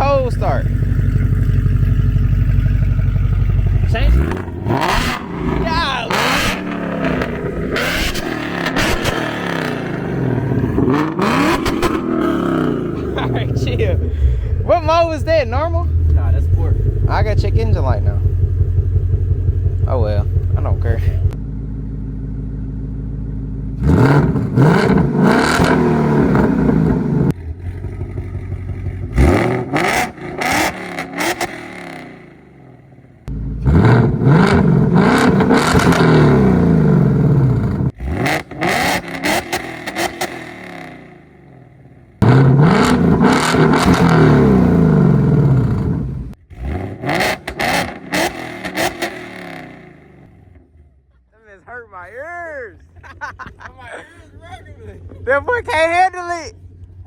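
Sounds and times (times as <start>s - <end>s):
car engine full-throttle revving: 0.0s - 51.3s, 52.9s - 57.0s
exhaust crackles and pops: 55.1s - 57.0s.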